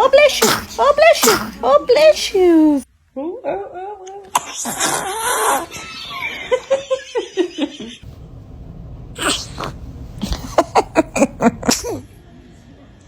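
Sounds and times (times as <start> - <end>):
baby sneezing: 0.0 - 2.8, 9.2 - 10.7, 11.6 - 12.1.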